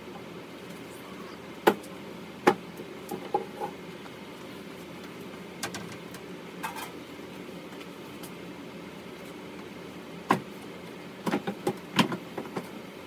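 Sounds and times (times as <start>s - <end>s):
steady low hum: 0.0s - 5.3s.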